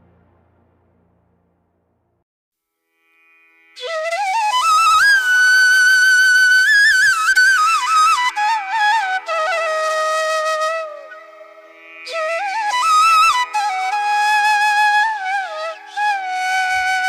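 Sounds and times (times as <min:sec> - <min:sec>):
steady drone: 0:00.0 - 0:02.2
flute playing ornamented melody: 0:03.6 - 0:17.0.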